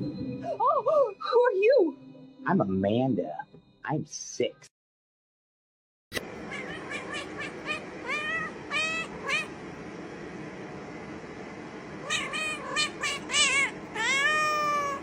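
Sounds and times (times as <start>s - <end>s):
cat meowing: 6.5s - 9.5s, 12.0s - 15.0s.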